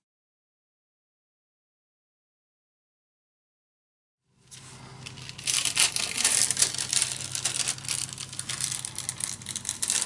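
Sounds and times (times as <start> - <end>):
paper crackling and rustling: 4.5 - 10.0.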